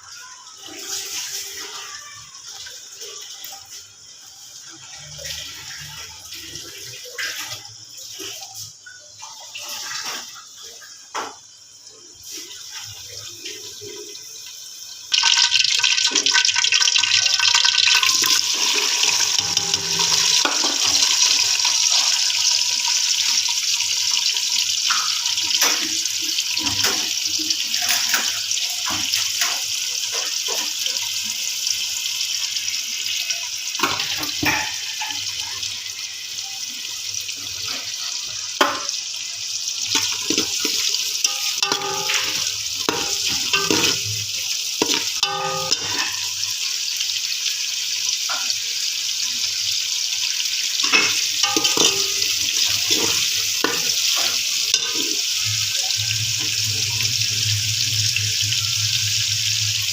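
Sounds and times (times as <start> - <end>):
tap water running into sink: 4.6 - 46.7, 48.1 - 59.9
knocks and clinks in water: 40.0 - 44.2, 44.8 - 46.2, 50.9 - 55.1.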